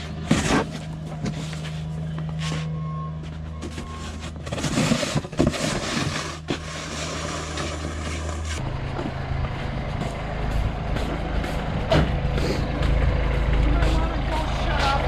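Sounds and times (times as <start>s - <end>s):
vehicle engine running: 7.7s - 15.0s.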